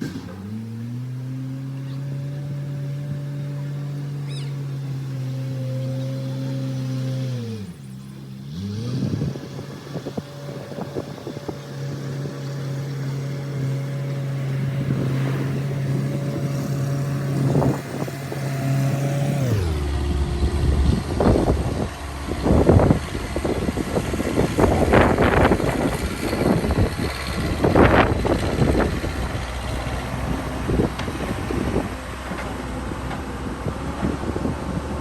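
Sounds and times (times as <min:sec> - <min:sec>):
backhoe engine running: 0:00.0 - 0:35.0.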